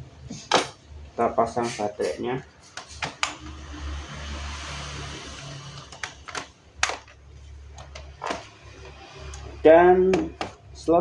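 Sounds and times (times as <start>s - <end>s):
plastic scraping and handling: 5.8s - 9.0s.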